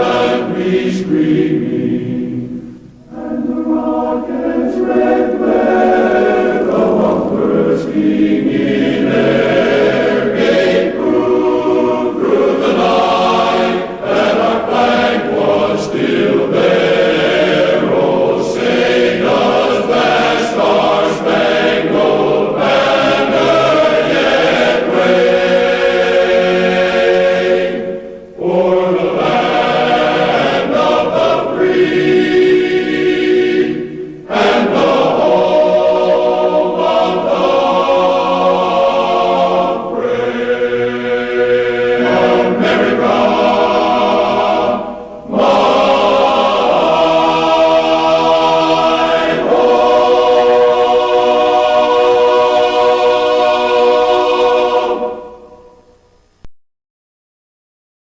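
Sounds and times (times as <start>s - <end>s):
choir singing held chords: 0.0s - 56.5s.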